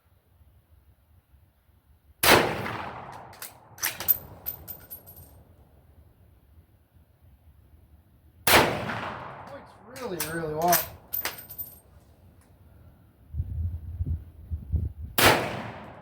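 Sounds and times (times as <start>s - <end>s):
rifle shot with echo: 2.2s - 4.4s, 8.4s - 11.1s, 15.2s - 16.0s
rifle bolt clicks and clanks: 3.1s - 5.3s, 9.4s - 11.8s.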